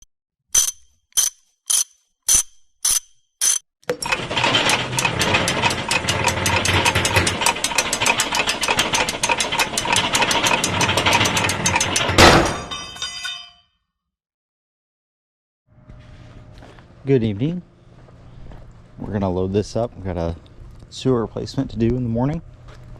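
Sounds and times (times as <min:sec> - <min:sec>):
mechanical ratcheting clicks: 0:00.5 - 0:03.6.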